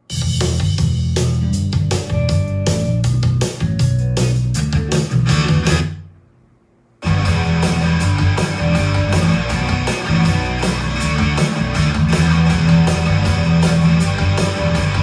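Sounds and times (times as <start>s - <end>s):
rock music through speaker: 0.0s - 6.1s, 7.0s - 15.0s.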